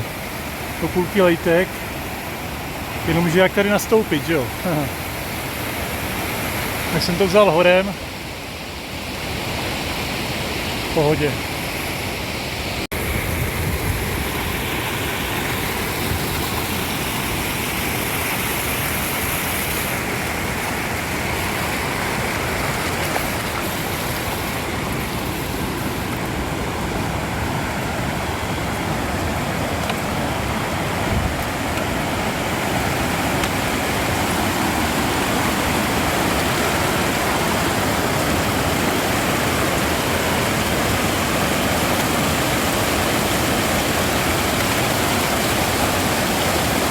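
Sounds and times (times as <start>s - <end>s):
rushing mountain creek: 0.0s - 46.9s.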